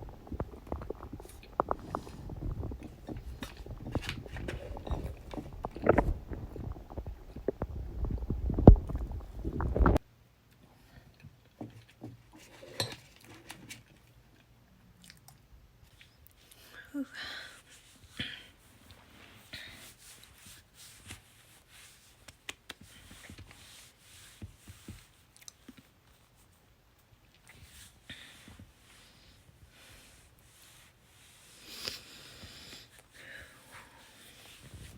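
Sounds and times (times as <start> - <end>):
stomach gurgling: 0.0 - 10.0, 33.4 - 34.9.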